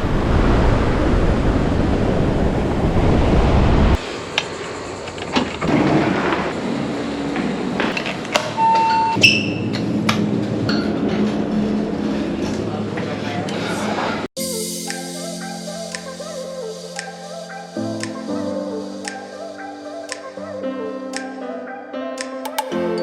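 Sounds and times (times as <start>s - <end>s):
wind buffeting microphone: 0.0s - 4.0s.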